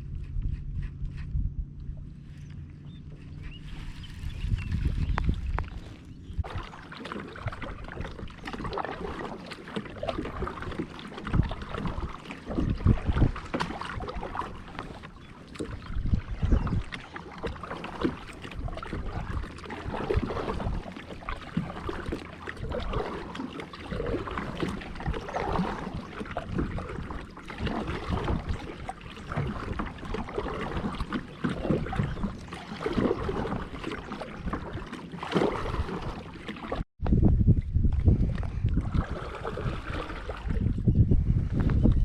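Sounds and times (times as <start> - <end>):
water splashing around kayak: 0.0 - 42.0
wind rumble on microphone: 0.0 - 42.0.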